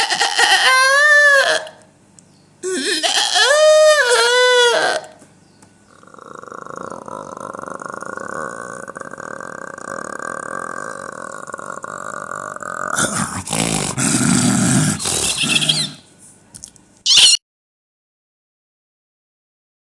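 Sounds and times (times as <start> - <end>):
man imitating animal noises: 0.0 - 1.8, 2.6 - 5.2, 5.9 - 16.1.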